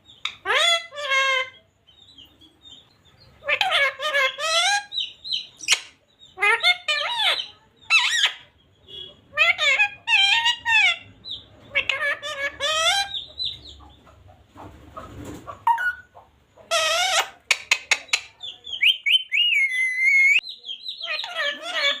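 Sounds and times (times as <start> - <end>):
parrots chattering: 0.1 - 14.4, 15.5 - 22.0
parrot harsh squawk: 0.4 - 1.6, 3.4 - 5.0, 9.3 - 11.1, 11.7 - 13.2, 16.7 - 17.4, 18.8 - 20.4, 21.0 - 22.0
parrot whistling: 18.8 - 20.4.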